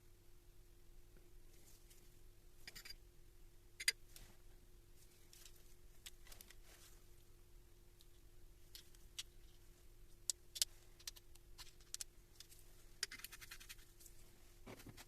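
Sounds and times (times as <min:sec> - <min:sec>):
faint steady hum: 0:00.0 - 0:15.0
small clicks and rustles: 0:05.0 - 0:07.3.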